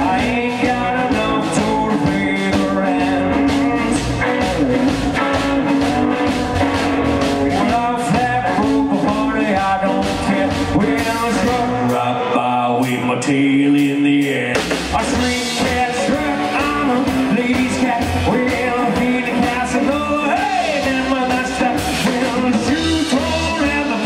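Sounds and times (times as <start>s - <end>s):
drums steady beat: 0.0s - 12.2s, 13.8s - 24.0s
rockabilly band playing: 0.0s - 24.0s.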